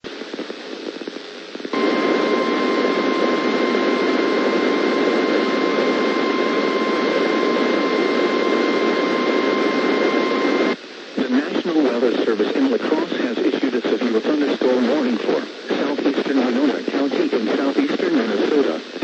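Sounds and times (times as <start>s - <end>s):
radio static: 0.1s - 19.0s
weather radio alarm beep: 1.8s - 10.8s.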